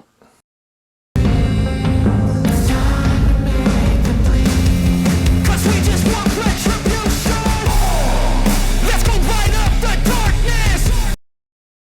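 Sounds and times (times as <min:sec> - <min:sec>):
loud music with drum beat: 0:01.2 - 0:11.2.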